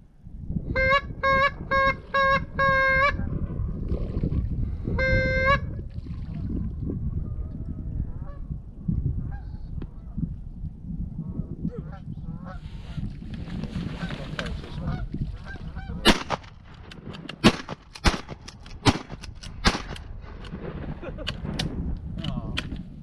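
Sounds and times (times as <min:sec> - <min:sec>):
wind rumble on microphone: 0:00.0 - 0:23.0
goose call honks: 0:00.8 - 0:03.2, 0:05.0 - 0:05.7
distant geese honking: 0:00.8 - 0:03.3, 0:11.9 - 0:13.0, 0:13.9 - 0:16.1.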